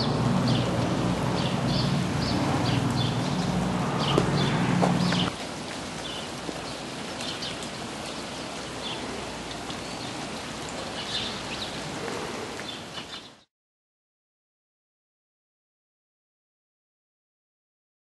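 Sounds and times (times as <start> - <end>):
steady outdoor hiss: 0.0 - 13.5.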